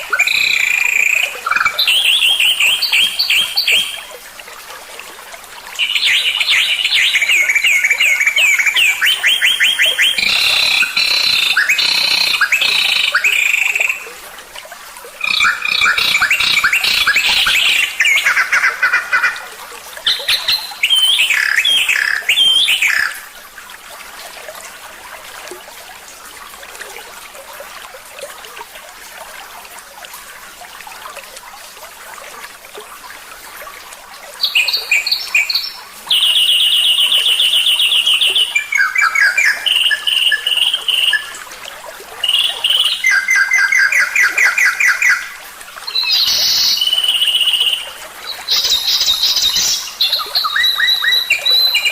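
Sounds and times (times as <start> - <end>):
songbird singing: 0.0 - 4.1, 5.8 - 14.1, 15.2 - 19.3, 20.1 - 23.2, 42.2 - 51.9.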